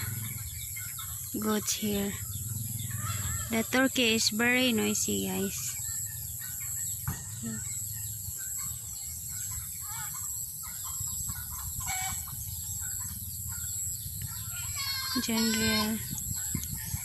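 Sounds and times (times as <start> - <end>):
farmyard fowl calling: 0.0 - 3.9, 5.3 - 17.0
turkey gobbling: 8.4 - 13.9.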